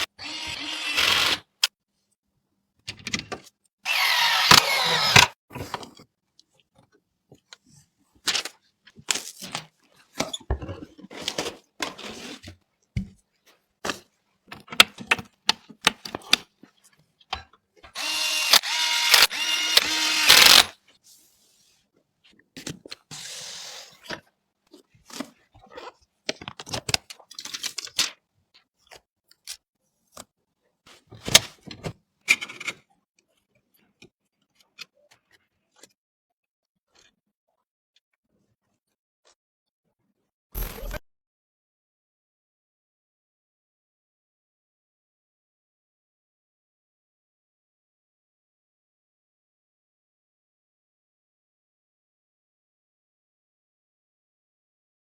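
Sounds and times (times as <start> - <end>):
electric screwdriver whirring: 0.0 - 1.6, 3.9 - 5.4, 18.0 - 20.7.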